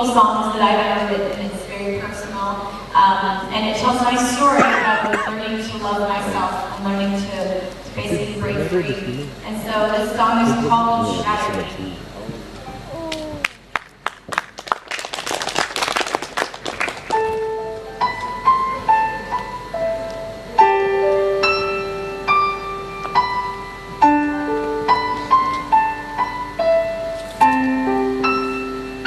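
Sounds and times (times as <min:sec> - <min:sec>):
audience clapping: 0:13.1 - 0:17.4
slow gentle piano notes: 0:17.1 - 0:29.0.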